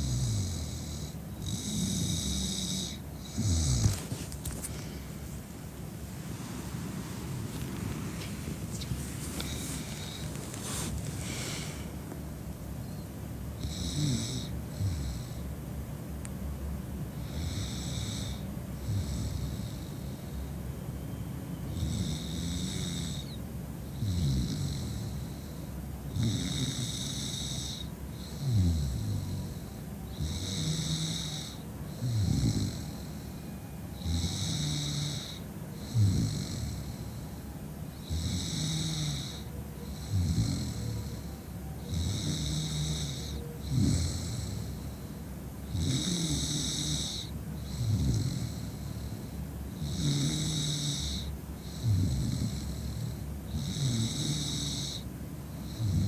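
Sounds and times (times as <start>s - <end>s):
woman snoring: 0.0s - 5.0s, 8.7s - 11.9s, 13.6s - 15.4s, 21.7s - 25.4s, 26.1s - 33.4s, 34.0s - 37.3s, 38.0s - 45.0s, 45.7s - 56.0s.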